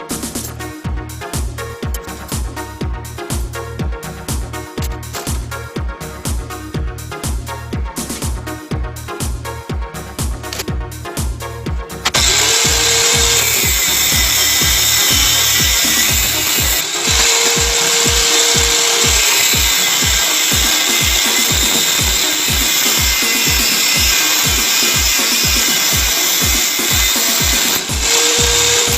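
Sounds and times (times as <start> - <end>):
background music with beat: 0.0 - 28.9
power tool running: 12.0 - 28.9.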